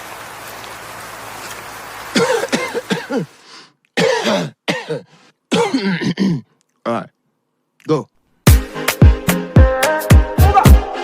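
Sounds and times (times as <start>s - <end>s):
person coughing: 2.2s - 3.3s, 4.0s - 6.6s.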